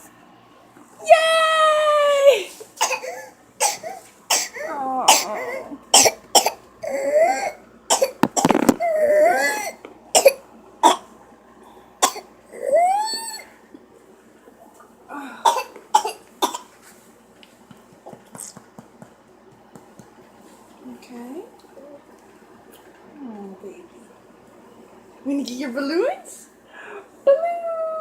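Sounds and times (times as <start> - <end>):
child whooping: 1.0 - 2.5, 12.6 - 13.5
child coughing: 2.8 - 11.0, 12.0 - 12.3, 15.4 - 16.7.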